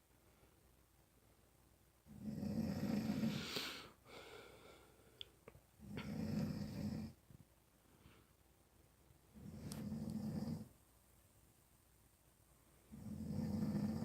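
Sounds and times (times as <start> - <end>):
loud snoring: 2.1 - 3.6, 5.8 - 7.2, 9.4 - 10.7, 12.9 - 14.0.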